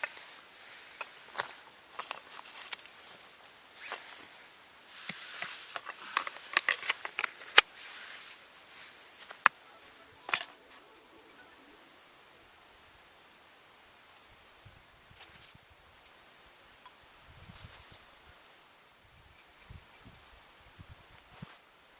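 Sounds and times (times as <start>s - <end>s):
rustling: 0.0s - 12.1s, 15.1s - 15.7s, 17.4s - 18.4s.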